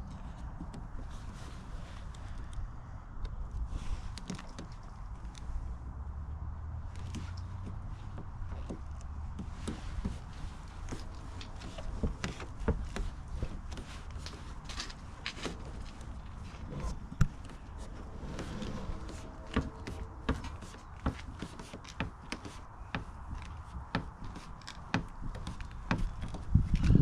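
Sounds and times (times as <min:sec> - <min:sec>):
hands handling parts and tools: 0:08.2 - 0:17.8.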